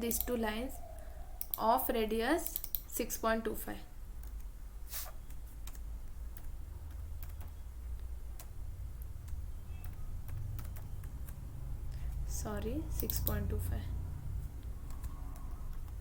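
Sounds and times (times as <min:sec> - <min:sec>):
computer keys clicking: 0:00.0 - 0:00.6, 0:01.4 - 0:03.0, 0:04.2 - 0:04.6, 0:05.2 - 0:12.2, 0:12.9 - 0:13.6, 0:14.4 - 0:16.0
low steady hum: 0:00.0 - 0:16.0.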